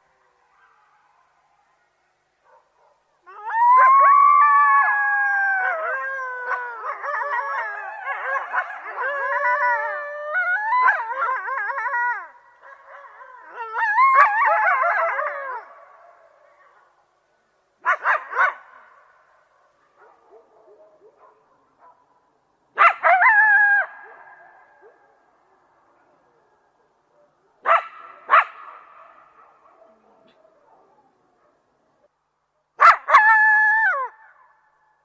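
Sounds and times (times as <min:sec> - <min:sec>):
coyotes howling and yipping: 0:02.5 - 0:16.9, 0:22.8 - 0:31.4.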